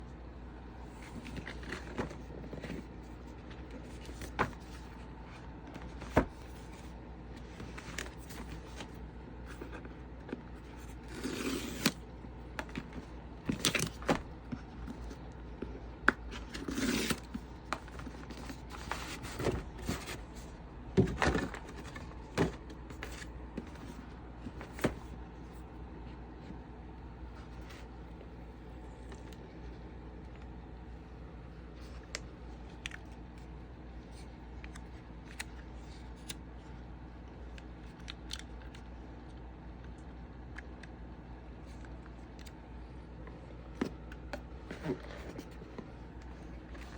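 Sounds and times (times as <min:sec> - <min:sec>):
low steady hum: 0:00.0 - 0:46.9
packaging scraping and rustling: 0:10.6 - 0:12.0, 0:16.3 - 0:20.4.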